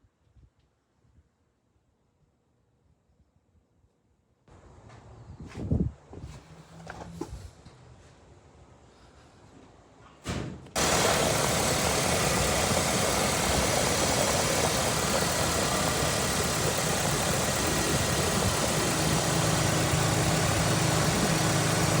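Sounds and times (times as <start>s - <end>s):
loud car engine idling: 10.8s - 22.0s.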